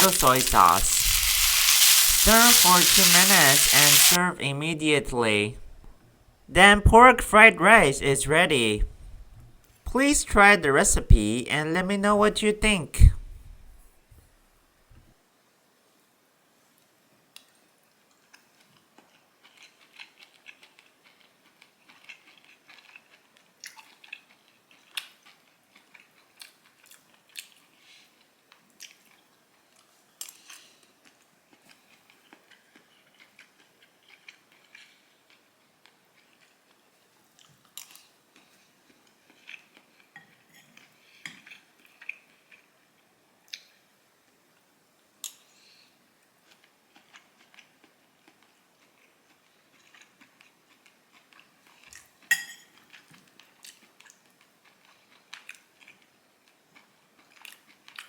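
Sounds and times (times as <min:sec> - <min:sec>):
soft chewing: 0:00.0 - 0:04.2, 0:18.3 - 0:43.8, 0:46.4 - 0:52.2, 0:52.8 - 0:58.0
cutlery scraping a plate: 0:52.3 - 0:52.8.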